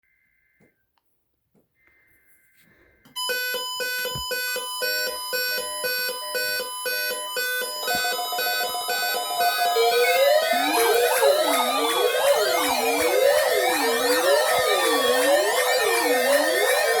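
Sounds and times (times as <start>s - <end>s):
faint steady tones: 2.8s - 17.0s
electronic synthesised tune: 5.4s - 17.0s.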